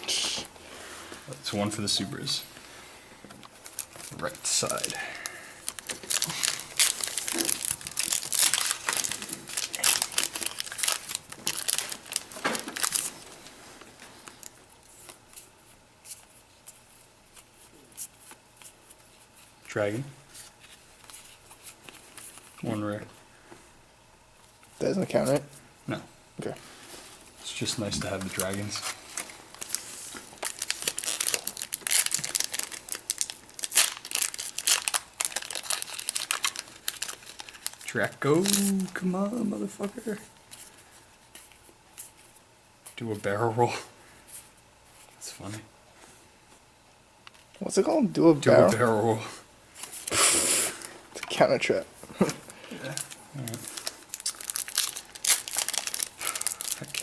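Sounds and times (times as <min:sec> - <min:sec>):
cards rustling: 0:03.3 - 0:19.6, 0:26.8 - 0:43.0, 0:50.8 - 0:57.0
foil pack tearing and crinkling: 0:03.5 - 0:13.4, 0:28.0 - 0:39.4, 0:52.2 - 0:57.0.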